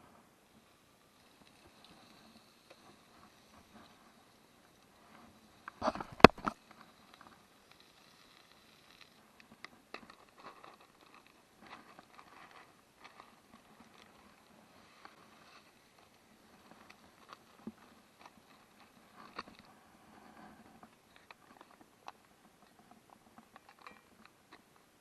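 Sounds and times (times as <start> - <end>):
campfire wood crackling: 0.4 - 20.2.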